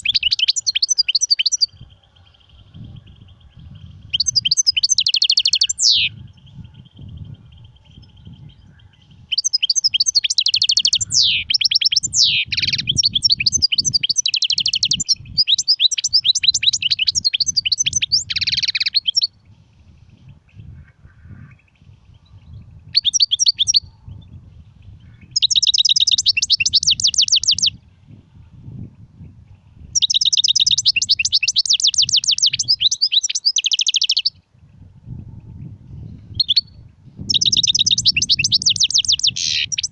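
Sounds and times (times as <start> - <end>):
finch twittering song: 0.0 - 34.5, 35.4 - 39.9.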